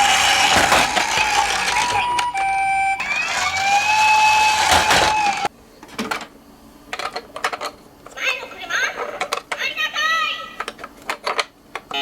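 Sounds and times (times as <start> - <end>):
tinny toy siren: 0.0 - 5.5.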